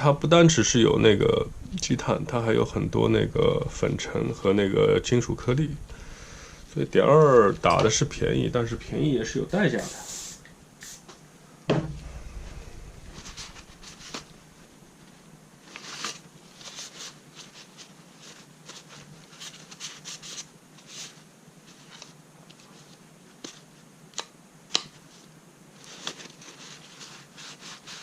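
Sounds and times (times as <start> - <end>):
loud knock: 11.7 - 14.2.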